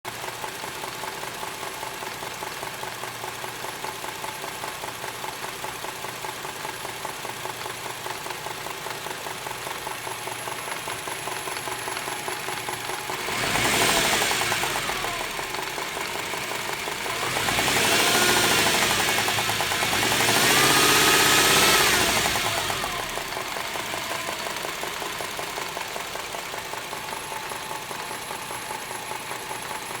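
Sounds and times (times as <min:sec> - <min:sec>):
car engine idling with knocking: 0:00.1 - 0:30.0
engine revving: 0:12.9 - 0:27.2.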